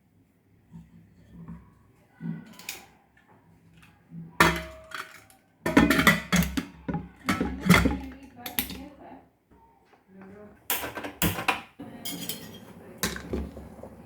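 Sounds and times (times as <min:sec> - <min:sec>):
metal pots and utensils clinking: 0:03.7 - 0:08.9, 0:10.7 - 0:13.9.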